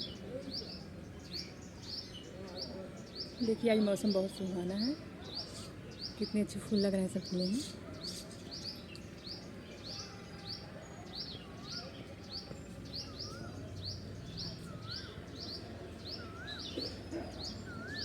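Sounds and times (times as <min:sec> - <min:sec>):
small bird chirping: 0:11.3 - 0:18.0.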